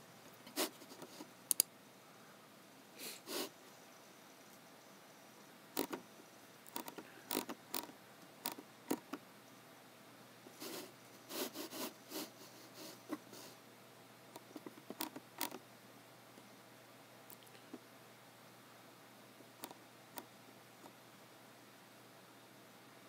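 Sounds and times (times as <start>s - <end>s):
mouse and keyboard clicks: 1.0s - 1.7s, 5.8s - 6.0s, 6.7s - 9.2s, 14.4s - 15.6s, 19.6s - 20.9s.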